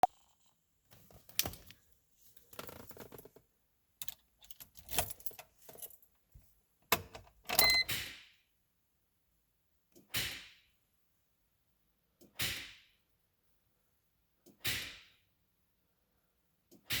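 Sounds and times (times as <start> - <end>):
car keys jangling: 4.0 - 6.1.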